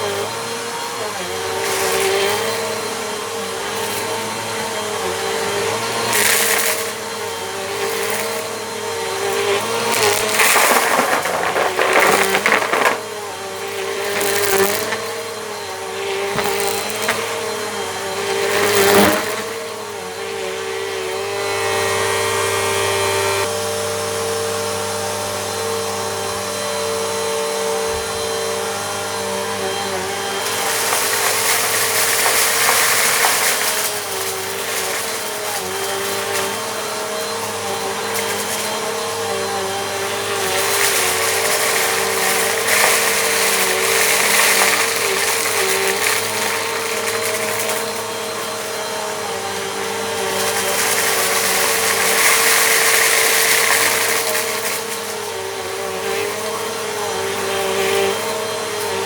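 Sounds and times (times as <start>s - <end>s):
vacuum cleaner running on rug: 0.0s - 59.0s
grit crackling in vacuum: 3.6s - 19.9s, 29.7s - 57.1s.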